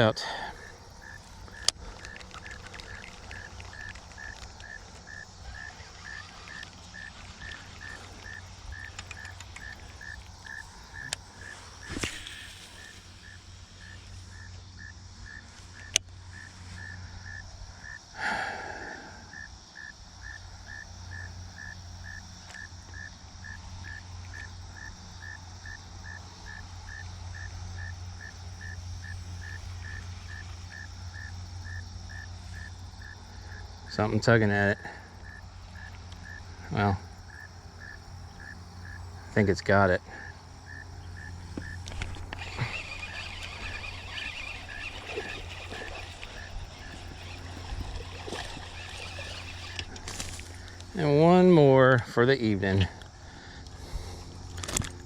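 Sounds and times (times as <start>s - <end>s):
cricket chirping: 0.0s - 55.0s.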